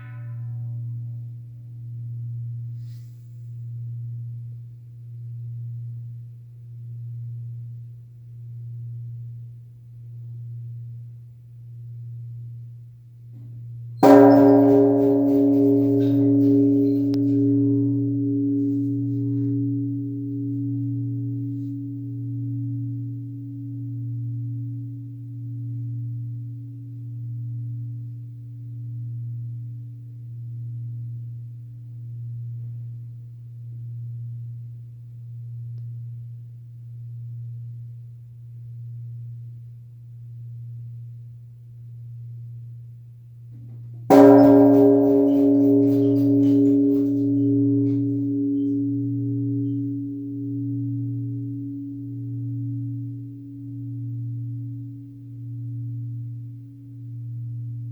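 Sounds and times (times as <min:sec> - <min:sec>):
temple bell ringing: 0:14.0 - 0:24.2, 0:44.1 - 0:56.2.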